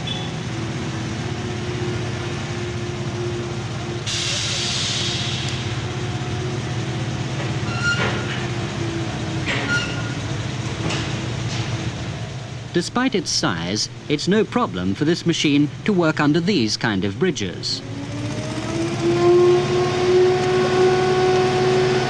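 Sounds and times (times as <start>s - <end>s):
engine deep drone: 0.0s - 22.0s
hiss burst: 4.0s - 5.8s
short squeaks: 7.4s - 8.5s, 9.4s - 10.3s.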